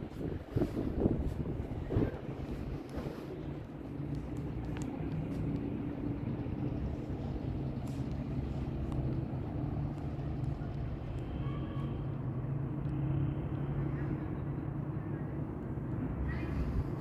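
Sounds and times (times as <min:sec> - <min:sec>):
faint clicks: 0:04.0 - 0:05.9.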